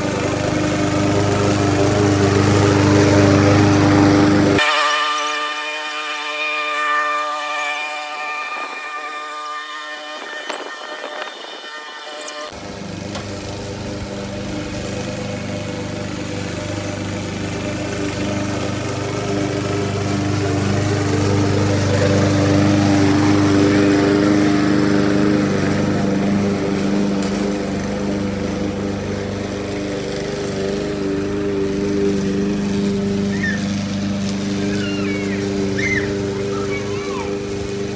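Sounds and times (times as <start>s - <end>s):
lawn mower engine running: 0.0s - 37.9s.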